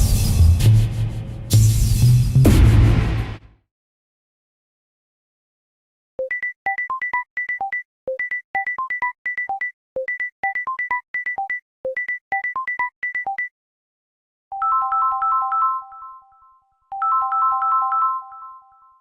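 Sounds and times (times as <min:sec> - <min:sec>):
phone ringtone melody: 0:06.2 - 0:13.5, 0:14.5 - 0:19.0.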